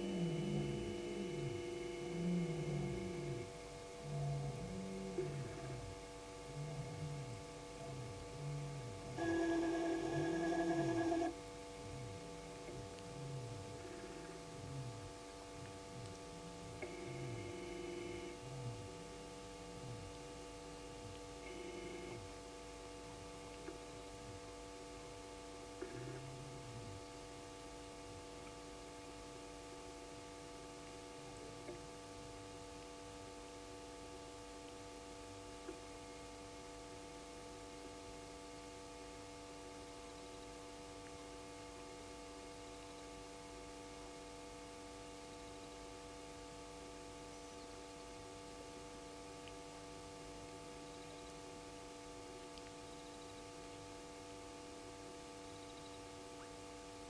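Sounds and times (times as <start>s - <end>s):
electrical hum: 0.0s - 57.0s.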